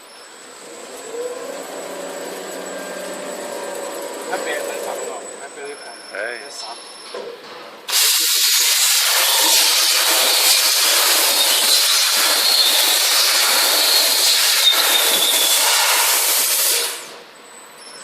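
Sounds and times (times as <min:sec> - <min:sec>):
cutter scraping steel sheet: 0:07.9 - 0:17.1.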